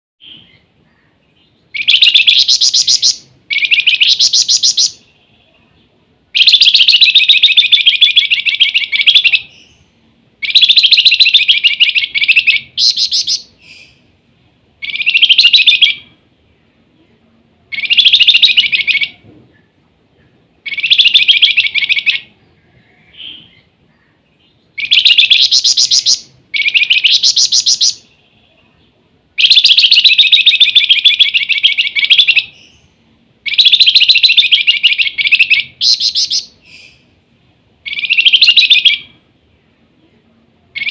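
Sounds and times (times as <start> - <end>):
songbird singing high rapid notes: 1.3 - 5.2, 6.3 - 14.1, 14.8 - 16.1, 17.7 - 19.2, 20.6 - 22.4, 24.5 - 28.3, 29.4 - 37.1, 37.8 - 39.2.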